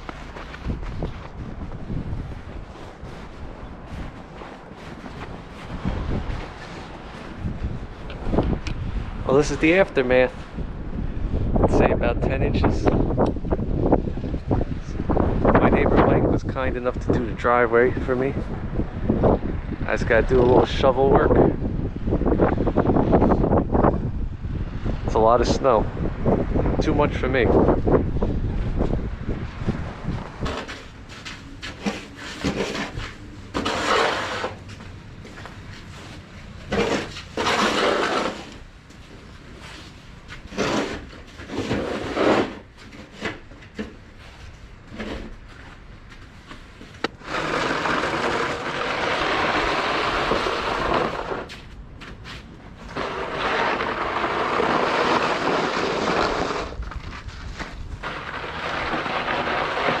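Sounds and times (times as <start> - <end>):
snow shovel scraping pavement: 0.0 - 7.6, 30.4 - 38.8, 39.5 - 43.4, 47.1 - 51.6, 52.2 - 60.0.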